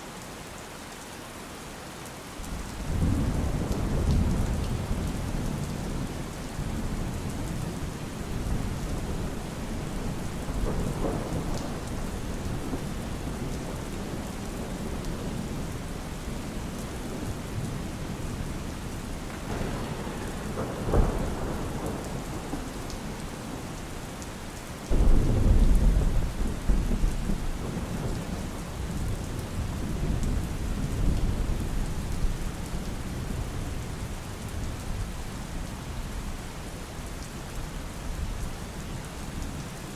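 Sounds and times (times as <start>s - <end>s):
steady rain falling: 0.0s - 39.9s
low rumble of thunder: 2.4s - 24.2s, 24.9s - 36.8s
thunder crack: 19.4s - 22.3s.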